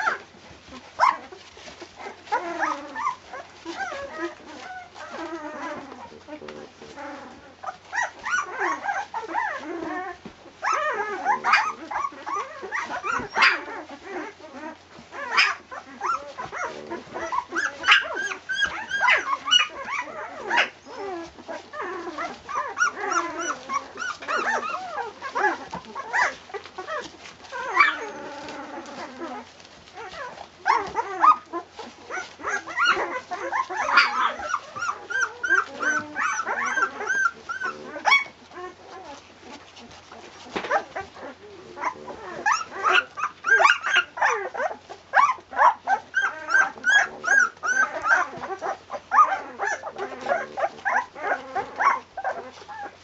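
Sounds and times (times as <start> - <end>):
puppies whimpering and yipping: 0.0 - 53.0.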